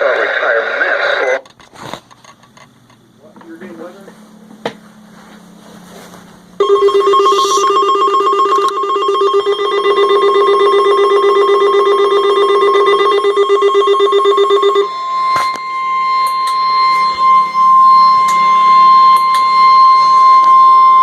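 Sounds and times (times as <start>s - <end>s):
steady warning alarm tone: 6.5s - 21.0s
pulsing two-tone alert signal: 6.6s - 21.0s.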